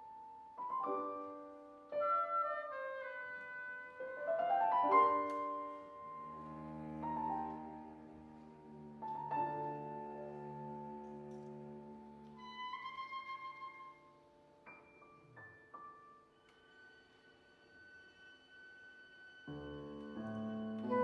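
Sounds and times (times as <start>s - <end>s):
piano chords: 0.0s - 12.4s, 19.5s - 21.0s.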